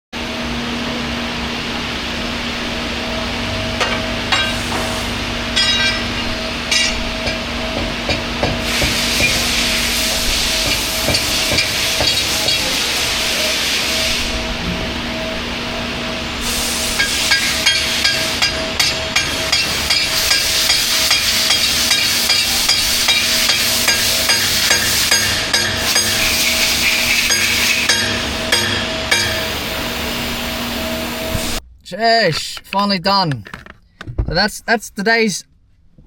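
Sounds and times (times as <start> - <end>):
machine humming: 0.2 - 31.9
steady hiss: 8.4 - 14.5.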